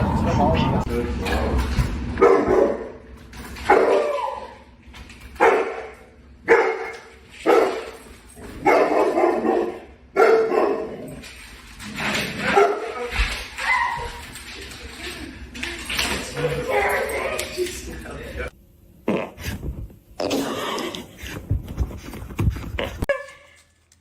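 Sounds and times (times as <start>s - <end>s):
dog barking: 2.2s - 3.0s, 5.4s - 7.9s, 8.6s - 11.1s, 12.4s - 13.0s.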